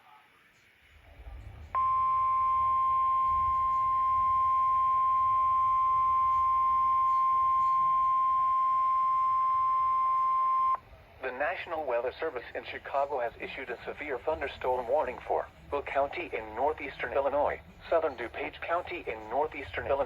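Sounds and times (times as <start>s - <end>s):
steady warning alarm tone: 1.8s - 10.8s.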